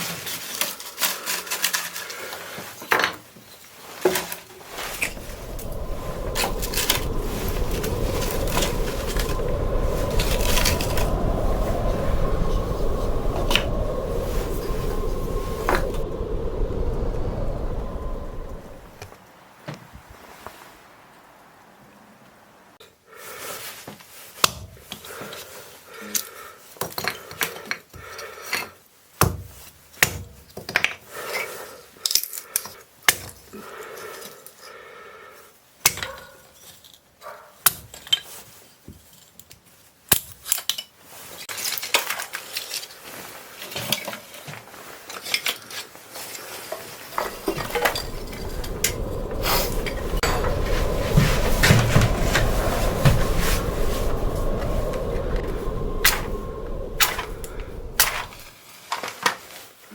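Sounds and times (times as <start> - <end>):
rushing hiss with low rumble: 4.7 - 21.5, 47.2 - 58.6.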